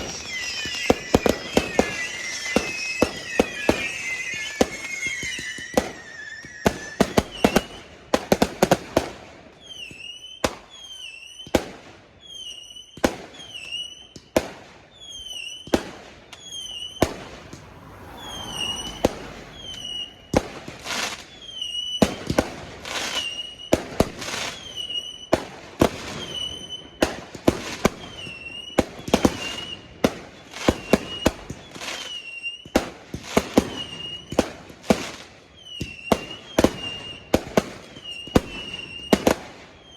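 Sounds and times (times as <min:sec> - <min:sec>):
short high whistle: 0:00.0 - 0:07.7, 0:16.4 - 0:21.8
fireworks banging and crackling: 0:00.0 - 0:09.3.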